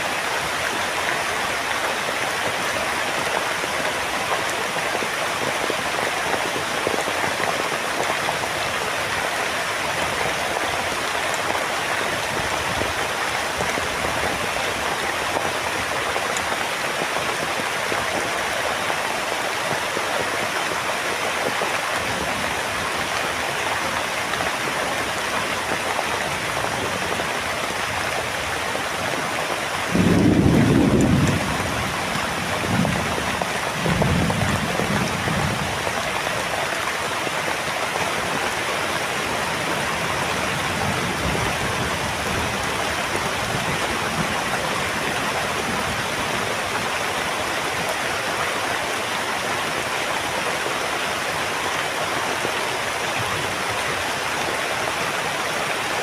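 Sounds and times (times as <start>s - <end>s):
heavy rain falling: 0.0s - 56.0s
low rumble of thunder: 29.9s - 35.8s.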